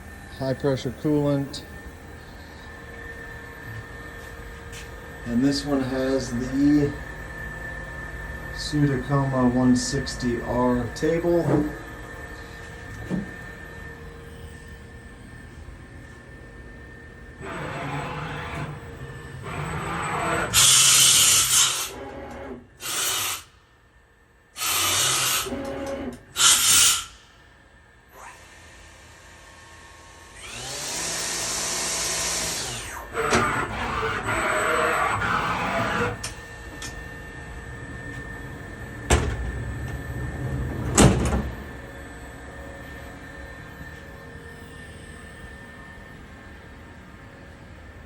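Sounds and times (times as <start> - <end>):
machine spindle whirring: 0.1 - 23.5, 24.6 - 27.2, 28.2 - 46.0
machine hissing bursts: 20.5 - 22.0, 26.4 - 27.2.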